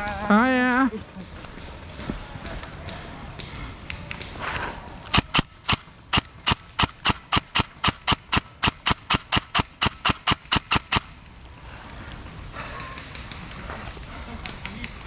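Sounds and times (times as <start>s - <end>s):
airsoft gun shots: 5.1s - 11.1s.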